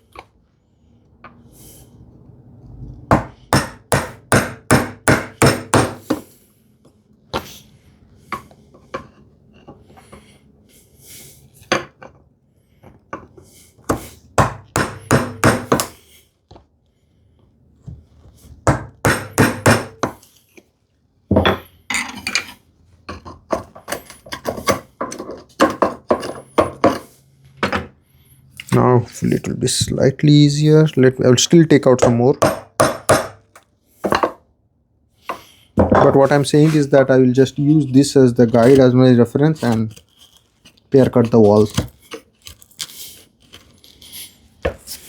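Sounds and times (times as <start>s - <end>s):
mallet striking chisel into wood: 3.1s - 6.2s, 14.4s - 15.9s, 18.7s - 20.2s, 32.0s - 33.4s.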